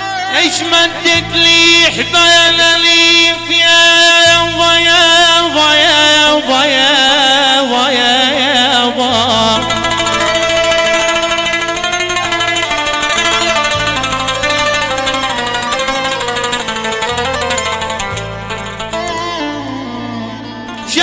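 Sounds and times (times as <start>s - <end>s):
quick plucked strings: 8.8s - 21.0s
wavering melody line: 9.4s - 19.7s, 20.7s - 21.0s.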